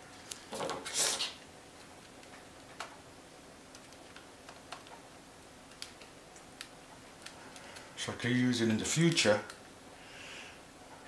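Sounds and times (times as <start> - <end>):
handling clicks and ticks: 8.9 - 9.6.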